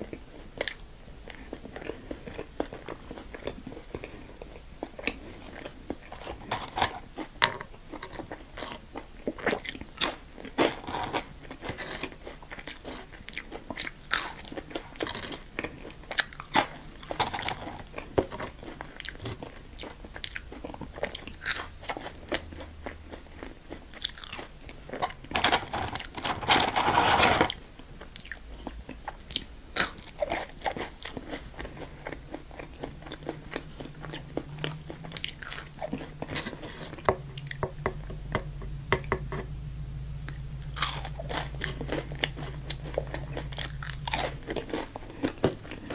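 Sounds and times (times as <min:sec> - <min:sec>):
crunchy food bites and chewing: 0:07.9 - 0:25.4, 0:29.3 - 0:37.6, 0:40.6 - 0:45.9.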